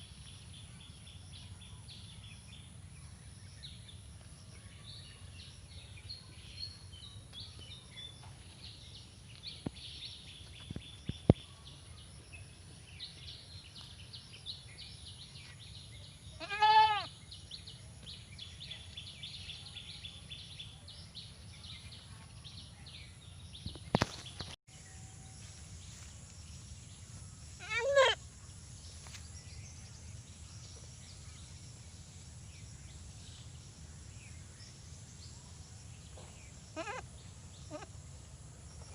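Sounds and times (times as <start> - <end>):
goat bleating: 16.4 - 17.1, 27.6 - 28.2, 36.8 - 37.0.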